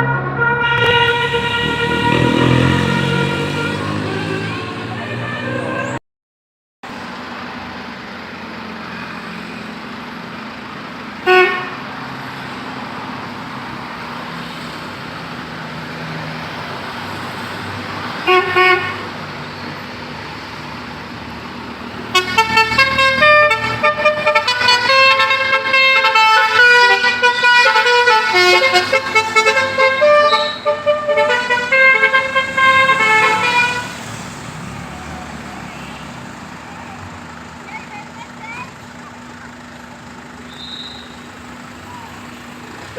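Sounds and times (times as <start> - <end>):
multi-tone car horn tune: 0.0 - 6.0, 11.2 - 11.8, 18.3 - 19.1, 22.1 - 34.0
traffic noise: 0.0 - 6.0, 6.8 - 42.9
short horn toots: 0.4 - 4.0, 22.1 - 33.9.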